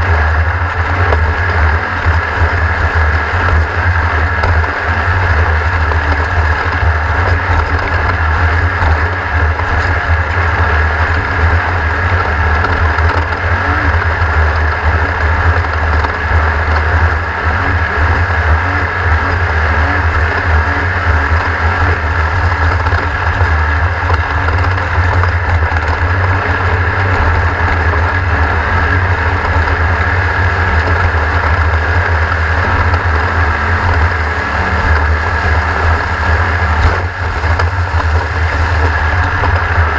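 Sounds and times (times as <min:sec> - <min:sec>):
racing engine running at speed: 0:00.0 - 0:39.9.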